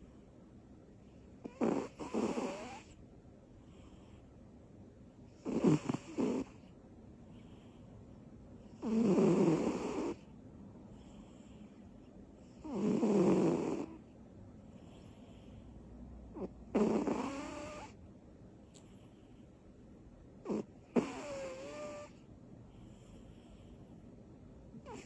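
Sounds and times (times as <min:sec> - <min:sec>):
cat snoring: 0:01.4 - 0:03.0, 0:05.4 - 0:06.7, 0:08.7 - 0:10.2, 0:12.4 - 0:14.0, 0:16.3 - 0:18.0, 0:20.4 - 0:22.2, 0:24.8 - 0:25.0.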